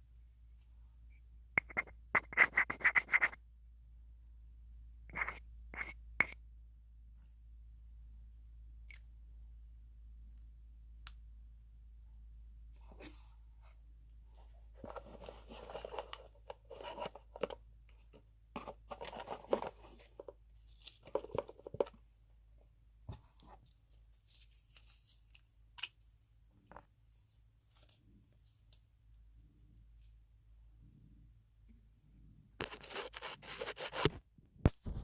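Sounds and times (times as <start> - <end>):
crackling handling scratches: 32.6 - 34.2.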